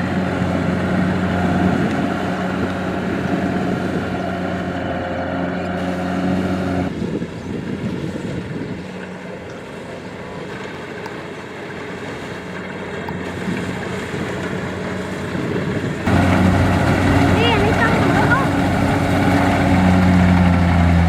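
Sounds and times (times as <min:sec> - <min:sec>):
combine harvester engine running: 0:00.0 - 0:07.0, 0:08.4 - 0:21.0
wind on microphone: 0:00.0 - 0:10.6, 0:13.1 - 0:20.5
machine rumble: 0:08.4 - 0:21.0.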